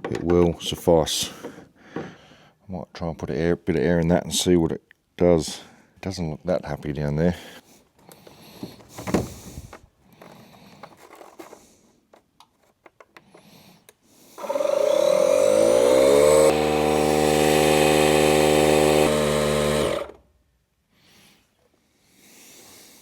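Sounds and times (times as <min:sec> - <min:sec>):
air compressor motor running: 0:14.4 - 0:20.2.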